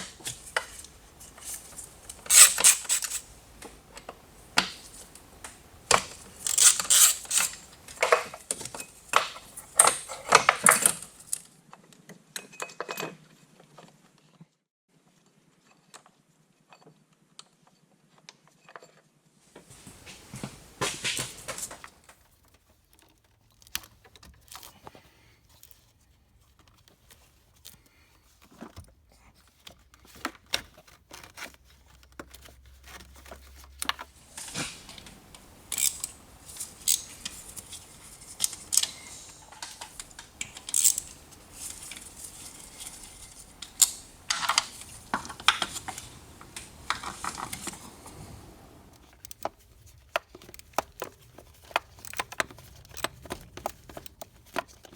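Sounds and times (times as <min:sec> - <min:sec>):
hand tools and parts clicking: 0:00.0 - 0:11.4, 0:33.7 - 0:54.9.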